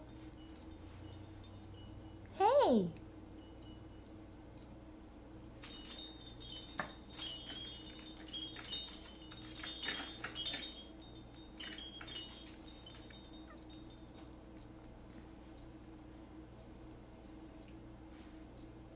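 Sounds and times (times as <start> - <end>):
metallic jingling: 0.0 - 2.2, 5.6 - 14.2.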